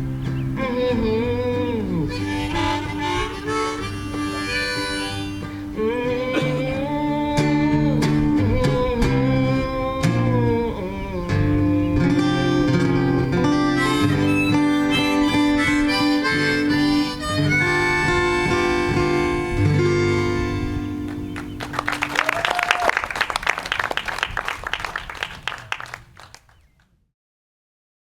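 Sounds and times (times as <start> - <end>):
acoustic guitar strumming: 0.0 - 21.8
harmonica: 0.2 - 7.8, 12.0 - 21.7
audience applauding: 21.1 - 26.6.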